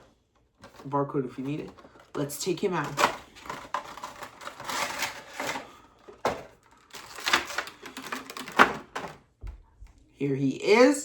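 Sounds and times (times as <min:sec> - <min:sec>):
packaging rustling and scraping: 0:00.0 - 0:09.2.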